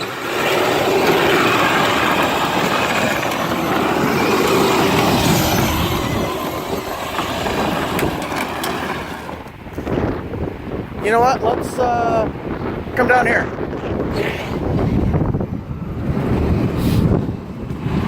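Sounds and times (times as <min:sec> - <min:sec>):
plastic wheels spinning and sliding: 0:00.0 - 0:10.1
electric motors whining: 0:00.0 - 0:11.0.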